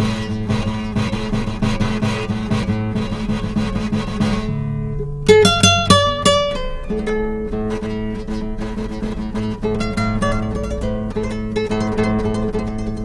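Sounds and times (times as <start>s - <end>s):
acoustic guitar playing: 0.0s - 13.0s.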